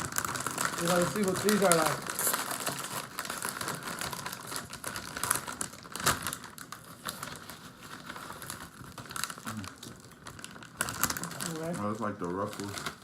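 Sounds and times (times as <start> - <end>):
chip bag crinkling: 0.0 - 13.0
crunching potato chips: 0.0 - 13.0.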